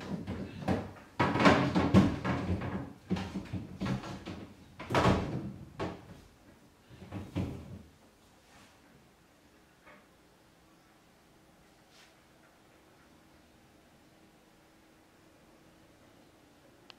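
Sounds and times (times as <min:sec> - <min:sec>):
knocks and clatters: 0:00.0 - 0:06.3.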